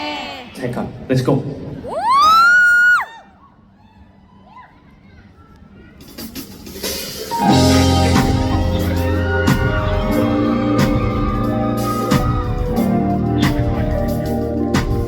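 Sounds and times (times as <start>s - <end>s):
instrumental pop music: 6.5s - 15.0s.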